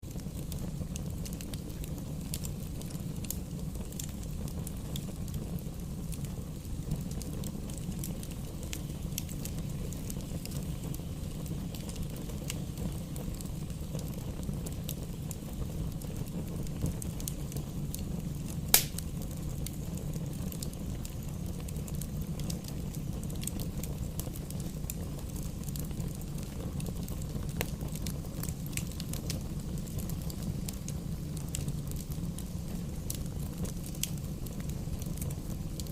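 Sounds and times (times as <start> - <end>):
fire rumbling and crackling: 0.0 - 35.9
loud sharp pop of fire: 18.7 - 19.3.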